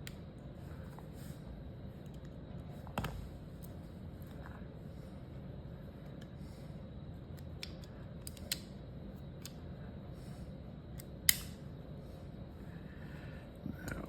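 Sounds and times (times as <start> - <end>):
metal clicks of revolver parts: 7.4 - 8.7, 11.0 - 11.6.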